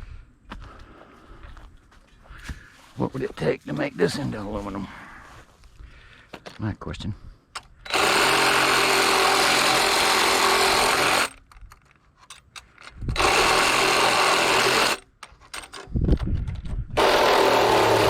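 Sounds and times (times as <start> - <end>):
handheld power tool running: 7.6 - 11.4, 13.0 - 15.9, 17.0 - 18.0.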